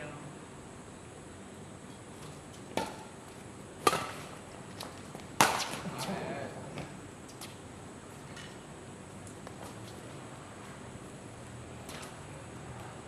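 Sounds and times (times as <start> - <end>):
racket hitting shuttlecock: 2.7 - 3.1, 3.8 - 6.2.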